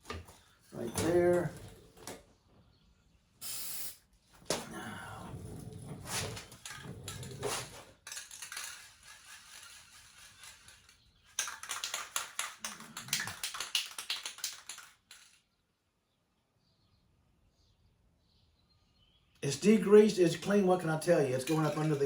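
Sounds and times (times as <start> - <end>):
spray paint hissing: 3.4 - 4.0
spray can mixing ball rattling: 7.5 - 15.4, 20.4 - 22.0.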